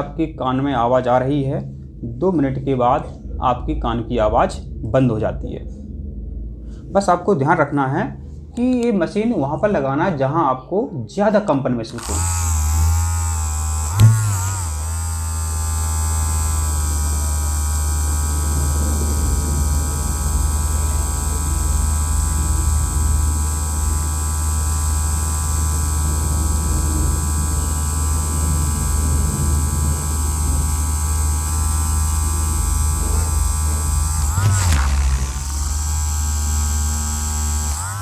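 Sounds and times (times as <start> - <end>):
electric vibration machine buzzing: 11.9 - 38.0.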